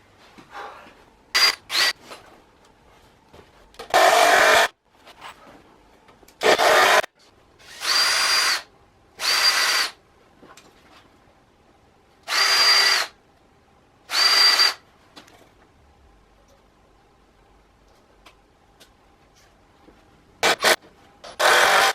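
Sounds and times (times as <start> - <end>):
power drill drilling into wood: 1.4 - 1.9, 4.0 - 4.7, 6.4 - 7.1, 7.7 - 8.6, 9.2 - 9.9, 12.3 - 13.1, 14.1 - 14.8, 21.4 - 21.9.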